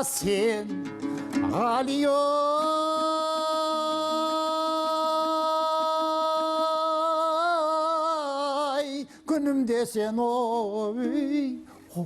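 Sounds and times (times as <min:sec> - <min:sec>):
strummed plucked-string accompaniment: 0:00.0 - 0:04.3.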